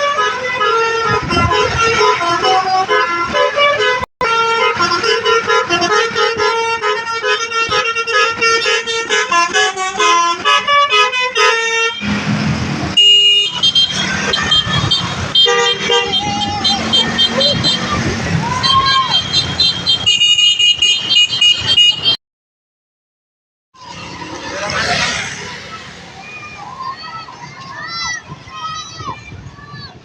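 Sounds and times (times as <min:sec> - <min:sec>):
multi-tone bus horn melody: 0:00.0 - 0:12.3, 0:12.9 - 0:22.2
engine and road noise: 0:00.0 - 0:22.2, 0:23.7 - 0:30.0.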